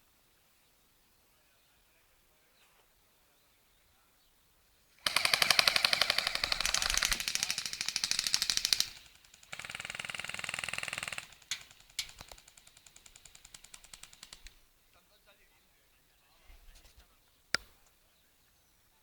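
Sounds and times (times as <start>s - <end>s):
airsoft gun firing: 5.0s - 14.6s.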